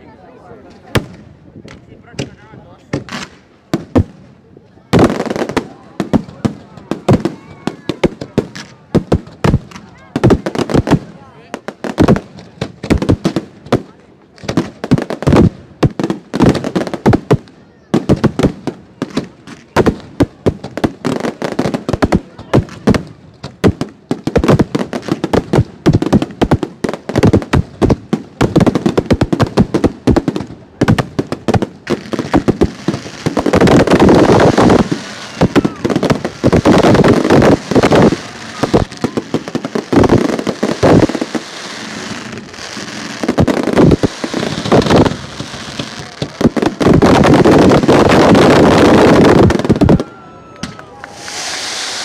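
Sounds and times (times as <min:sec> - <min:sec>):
fireworks crackle: 0:00.8 - 0:52.0
fireworks shells bursting: 0:50.6 - 0:52.0.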